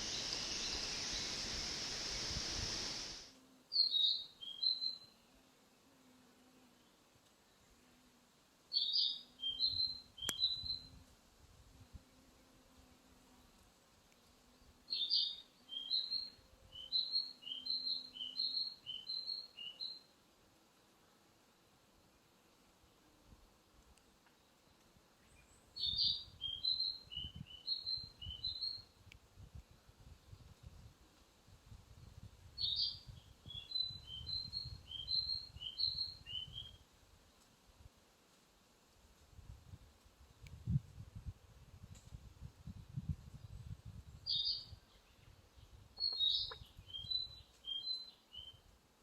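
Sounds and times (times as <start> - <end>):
bird whistling song: 8.8 - 10.9, 25.8 - 28.8, 32.6 - 36.8, 44.3 - 44.8, 46.0 - 48.6.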